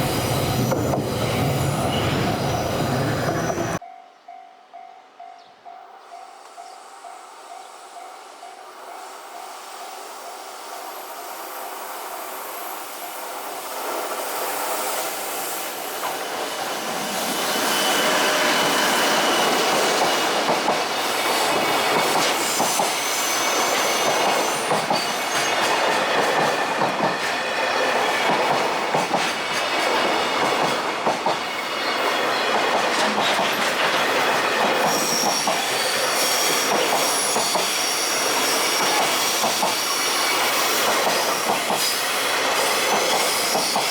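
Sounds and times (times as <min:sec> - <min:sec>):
freight train wagons rattling past: 0:00.0 - 0:03.8, 0:15.7 - 0:43.9
high wheel squeal: 0:00.0 - 0:03.8, 0:15.4 - 0:19.7, 0:34.8 - 0:43.9
wheels clicking over rail joints: 0:24.1 - 0:35.7.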